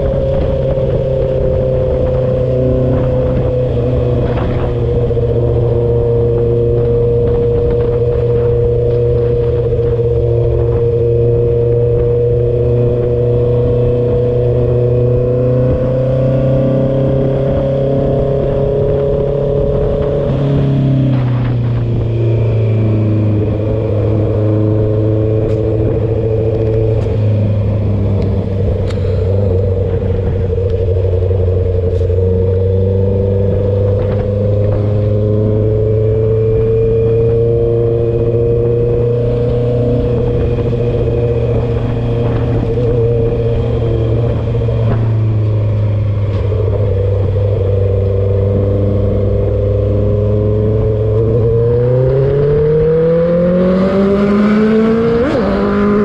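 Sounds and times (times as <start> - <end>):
motorcycle engine revving: 0.0 - 56.0.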